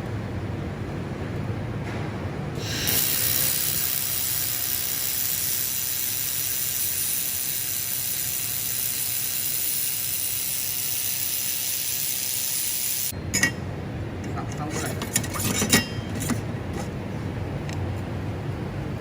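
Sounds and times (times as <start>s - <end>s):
laser welder hissing: 2.6s - 13.1s.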